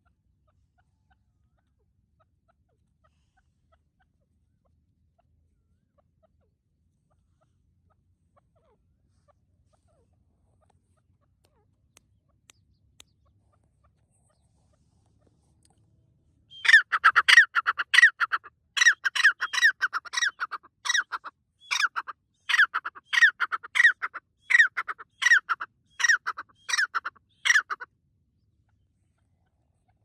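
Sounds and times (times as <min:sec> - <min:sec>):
francolin calling harshly: 0:16.5 - 0:27.8.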